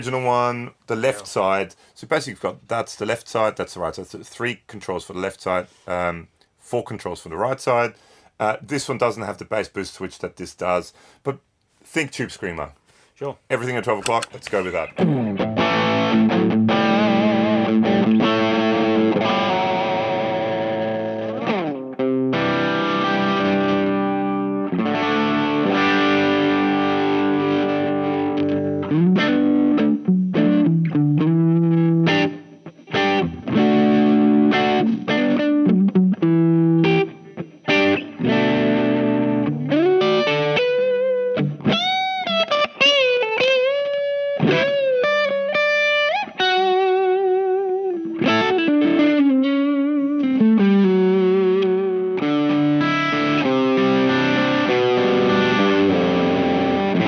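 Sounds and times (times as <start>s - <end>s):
overdriven electric guitar: 14.0s - 57.0s.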